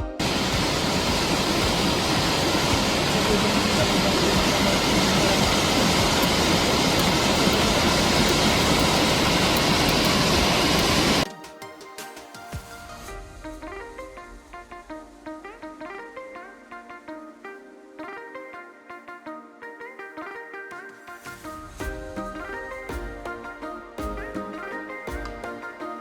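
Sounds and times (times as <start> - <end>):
waterfall rushing: 0.0 - 11.3
music: 0.0 - 26.0.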